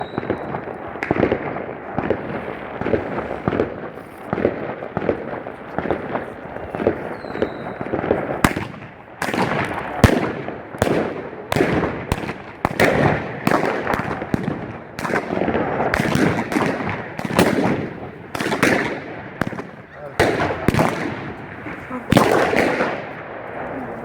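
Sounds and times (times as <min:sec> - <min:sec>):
crackling hiss of fireworks: 0:00.0 - 0:24.0
fireworks banging: 0:00.0 - 0:24.0.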